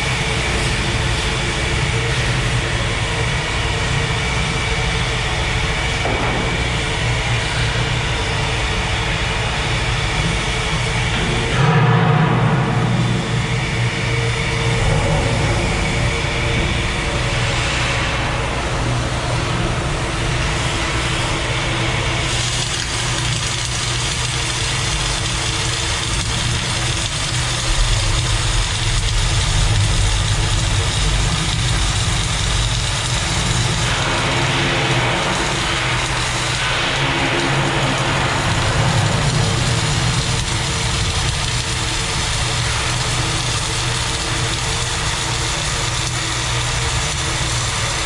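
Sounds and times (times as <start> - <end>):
low machine drone: 0.0 - 48.0
welding arc buzz and hiss: 0.0 - 48.0.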